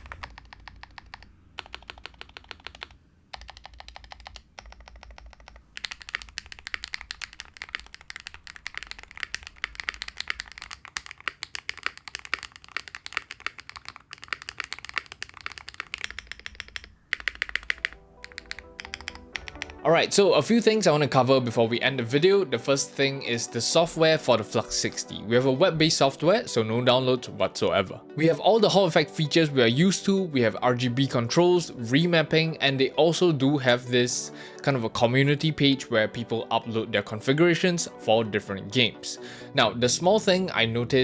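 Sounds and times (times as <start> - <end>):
mechanical keyboard typing: 0.0 - 19.8.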